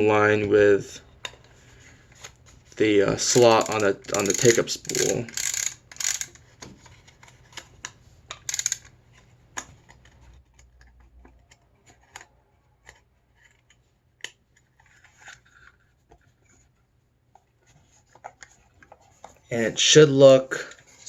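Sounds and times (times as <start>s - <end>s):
small clicks: 8.4s - 8.9s.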